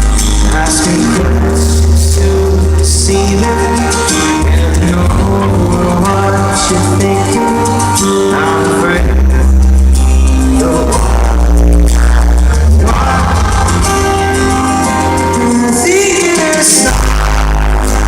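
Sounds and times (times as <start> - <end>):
live pop music over speakers: 0.0 - 18.0
person singing: 0.0 - 18.0.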